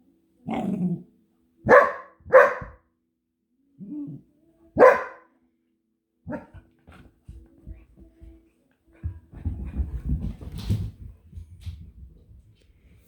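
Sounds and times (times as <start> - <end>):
puppy barking: 1.7 - 2.8, 4.8 - 5.3, 6.3 - 6.6.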